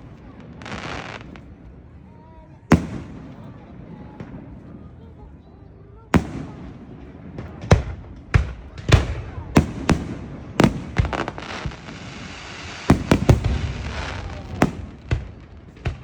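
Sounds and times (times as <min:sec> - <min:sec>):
fireworks crackling hiss: 0:00.0 - 0:01.6, 0:08.7 - 0:16.0
fireworks bangs: 0:02.7 - 0:04.9, 0:06.2 - 0:16.0.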